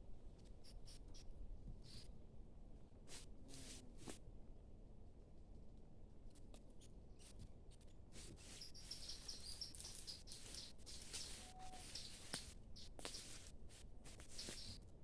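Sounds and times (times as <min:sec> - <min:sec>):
small bird chirping: 0:00.6 - 0:01.3, 0:08.2 - 0:13.4, 0:14.2 - 0:14.8.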